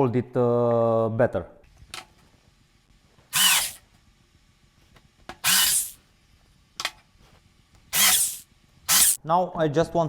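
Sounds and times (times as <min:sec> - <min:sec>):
small drill whirring: 0:03.3 - 0:03.9, 0:05.4 - 0:06.0, 0:07.9 - 0:09.2.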